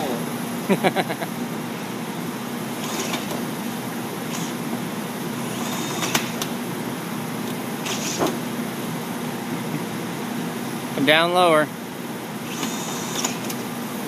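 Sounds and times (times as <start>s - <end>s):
cordless drill drilling metal: 2.8s - 3.4s, 4.2s - 4.7s, 5.4s - 6.5s, 7.8s - 8.3s, 12.4s - 13.6s.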